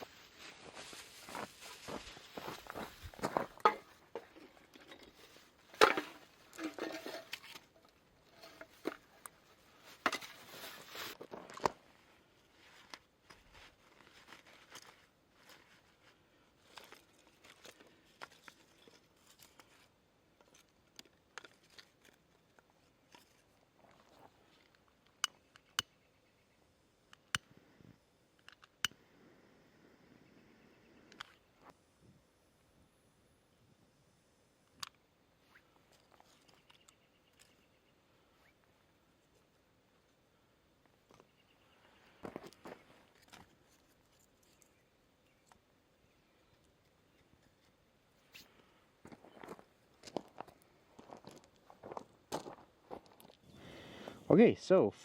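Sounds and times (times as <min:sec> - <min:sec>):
rustling and crinkling: 0:00.0 - 0:25.2, 0:46.5 - 0:54.2.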